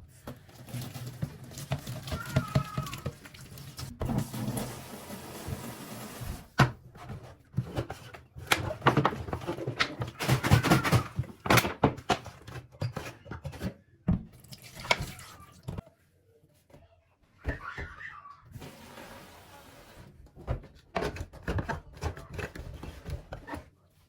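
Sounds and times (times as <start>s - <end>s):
household things knocking and clattering: 0.2s - 4.5s, 6.6s - 15.1s, 20.2s - 23.8s.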